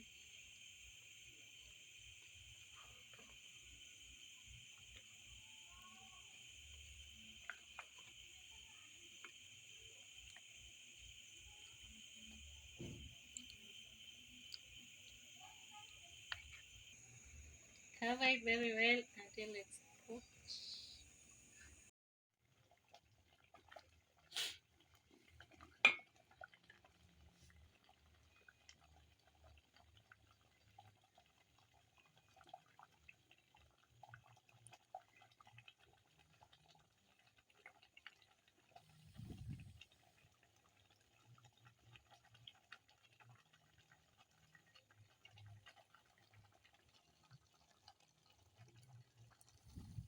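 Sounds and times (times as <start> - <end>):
curry bubbling in a pot: 0.0 - 50.0.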